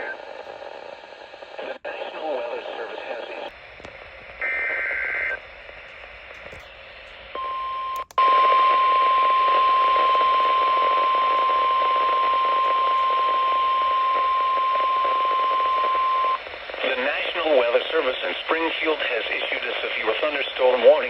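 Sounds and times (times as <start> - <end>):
radio static: 0.0 - 21.0.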